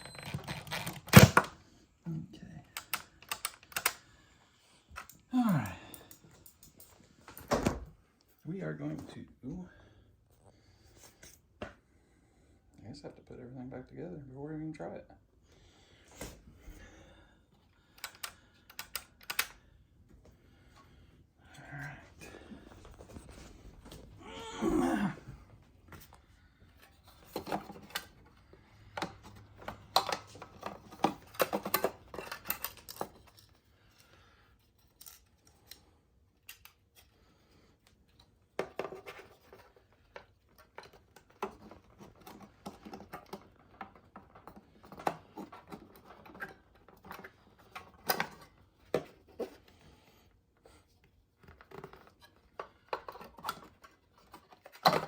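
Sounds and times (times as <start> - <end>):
plastic parts clicking and rattling: 0.0 - 1.6, 2.6 - 4.1, 17.7 - 19.6, 25.9 - 37.2, 37.8 - 49.8, 51.3 - 55.0.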